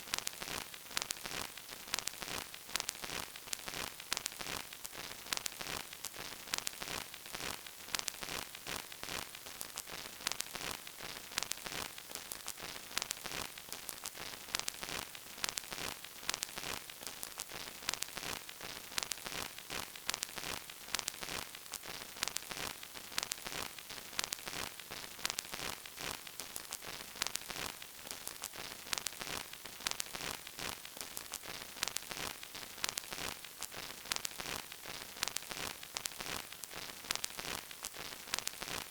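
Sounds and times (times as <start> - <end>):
vinyl record hiss and crackles: 0.0 - 38.9.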